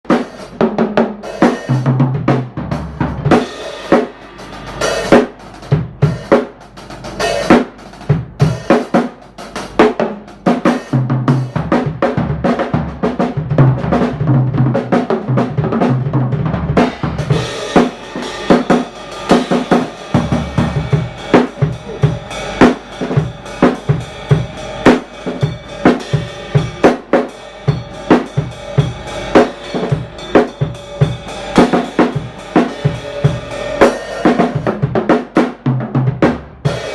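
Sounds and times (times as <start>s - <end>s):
cymbal wash: 3.0s - 8.9s, 16.8s - 34.7s.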